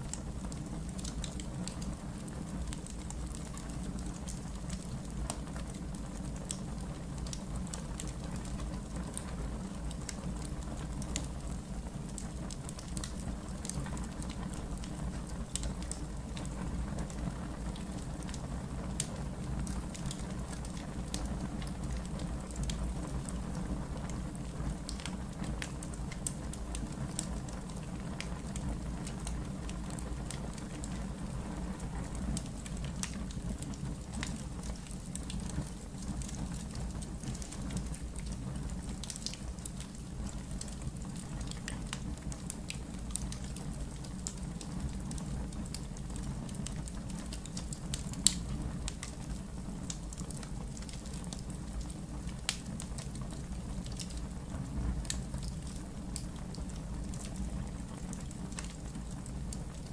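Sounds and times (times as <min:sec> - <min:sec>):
low fire rumble: 0:00.0 - 0:59.9
wood fire crackling: 0:00.0 - 0:59.9
fire pops: 0:31.8 - 0:59.9.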